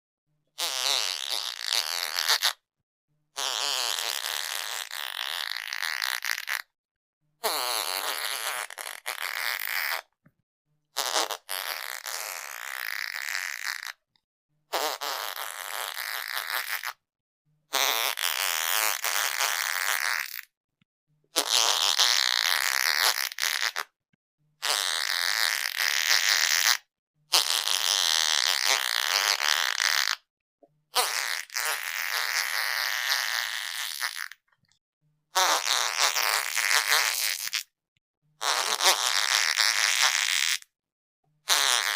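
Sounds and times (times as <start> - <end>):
fart sounds: 0.6 - 2.6, 3.4 - 6.7, 7.4 - 10.1, 11.0 - 14.0, 14.7 - 17.0, 17.7 - 20.5, 21.3 - 24.0, 24.6 - 30.3, 30.9 - 34.5, 35.3 - 37.7, 38.4 - 40.7, 41.4 - 41.9.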